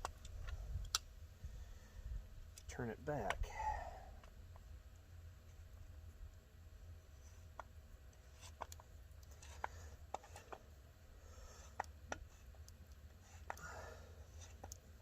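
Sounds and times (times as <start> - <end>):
faint clicks and metallic ticks: 0.0 - 1.1, 7.2 - 15.0
low steady hum: 0.0 - 15.0.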